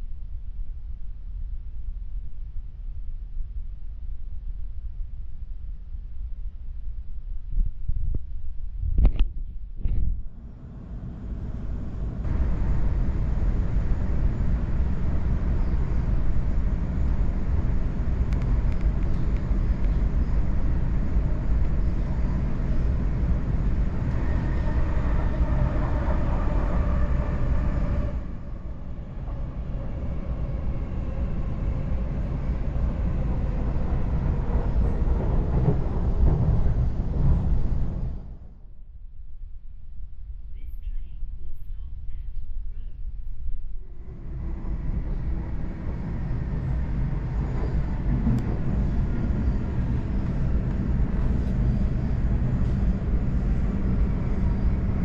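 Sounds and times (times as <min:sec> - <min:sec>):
train wheels rumbling on track: 0:10.3 - 0:38.6, 0:43.9 - 0:55.0
faint whine: 0:37.1 - 0:55.0.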